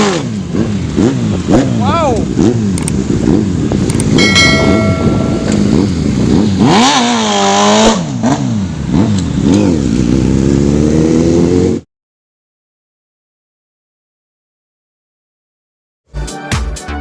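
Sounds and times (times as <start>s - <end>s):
motorcycle engine revving: 0.0s - 11.8s.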